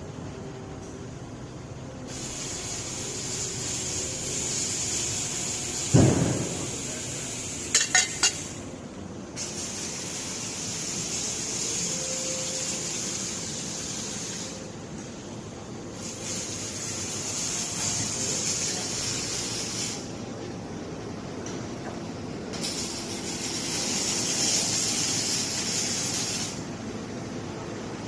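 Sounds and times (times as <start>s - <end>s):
workshop machinery noise: 0.0s - 28.0s
welding arc hissing: 2.1s - 8.7s, 9.4s - 14.8s, 15.9s - 20.2s, 22.6s - 26.7s.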